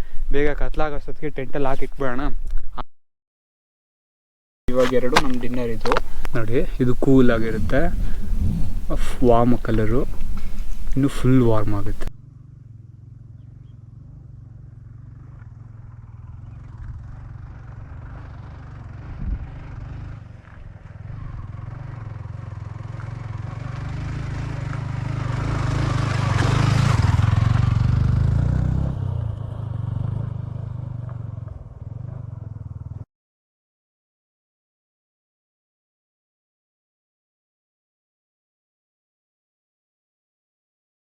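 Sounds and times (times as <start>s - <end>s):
vehicle engine rumble: 4.7s - 33.0s.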